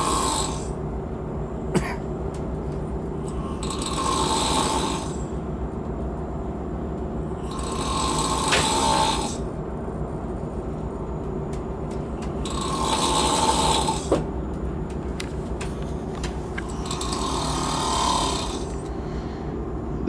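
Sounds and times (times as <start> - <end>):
ship engines rumbling: 0.0 - 20.0
person snoring: 3.4 - 5.2, 7.5 - 9.4, 12.4 - 14.1, 16.8 - 18.8.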